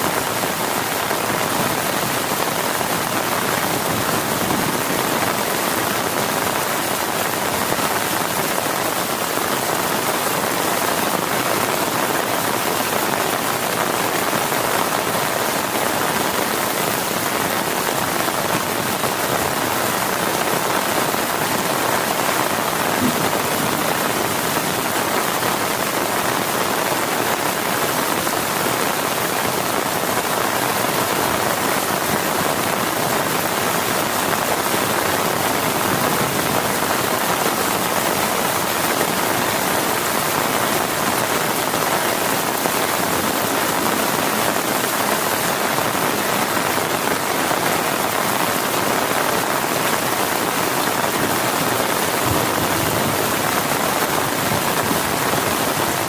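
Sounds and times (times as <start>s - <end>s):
heavy rain pouring: 0.0s - 56.0s.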